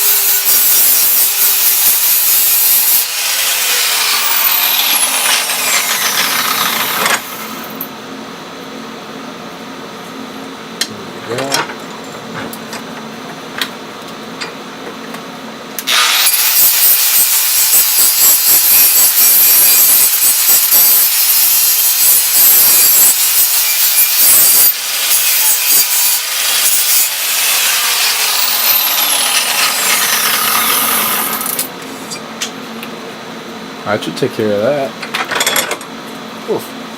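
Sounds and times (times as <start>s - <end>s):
power tool grinding metal: 0.0s - 7.8s, 15.8s - 32.2s.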